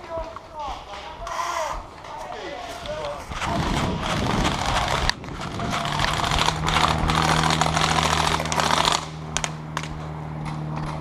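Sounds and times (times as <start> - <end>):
airsoft guns firing: 3.0 - 10.0.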